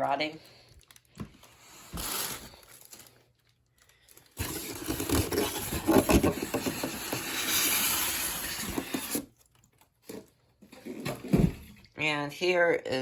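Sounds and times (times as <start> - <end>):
packing material rubbing and scraping: 4.4 - 9.3.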